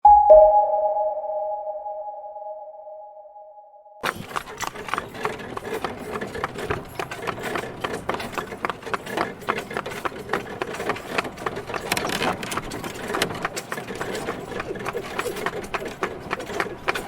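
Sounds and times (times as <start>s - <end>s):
horse hooves clip-clopping: 4.0s - 17.0s
wagon rolling: 4.0s - 17.0s.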